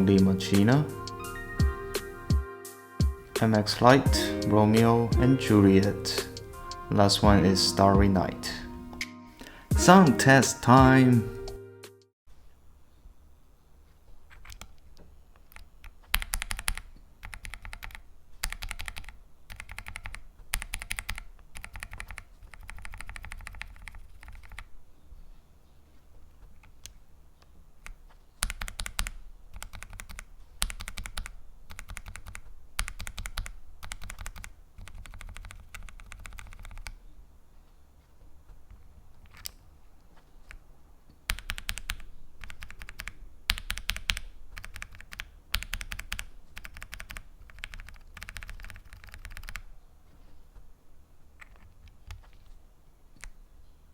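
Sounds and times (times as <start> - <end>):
mechanical keyboard typing: 15.4 - 24.7, 27.8 - 37.0, 39.2 - 39.6, 41.3 - 49.7.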